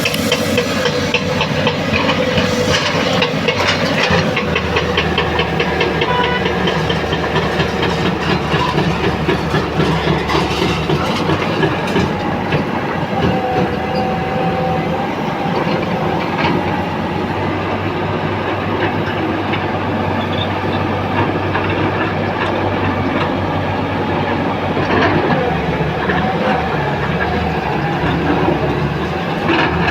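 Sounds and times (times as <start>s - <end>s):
metallic clanking and rattling: 0.0s - 16.7s
metal on metal squeals: 0.0s - 17.5s
heavy diesel machinery running: 0.0s - 29.9s.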